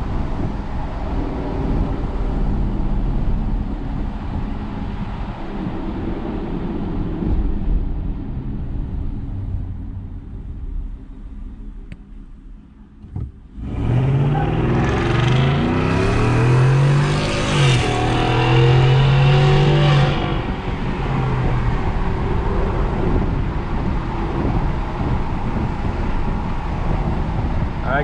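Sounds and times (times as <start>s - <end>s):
truck engine accelerating hard: 13.5s - 27.8s.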